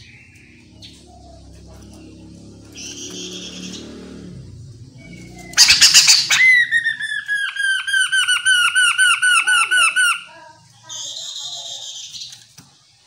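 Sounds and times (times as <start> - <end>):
bird whistled notes: 4.9 - 10.3
bird harsh rattling chatter: 5.2 - 12.5.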